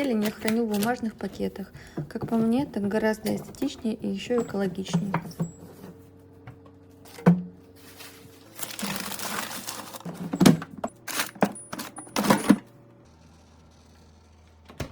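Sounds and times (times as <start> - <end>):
clinks and knocks of items: 0.0 - 5.9, 8.5 - 12.7
paper bag rustling: 7.7 - 10.3.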